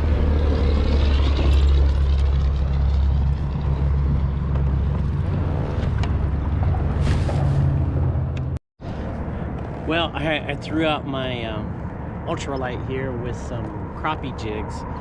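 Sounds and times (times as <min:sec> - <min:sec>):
low rumbling motor drone: 0:00.0 - 0:09.6.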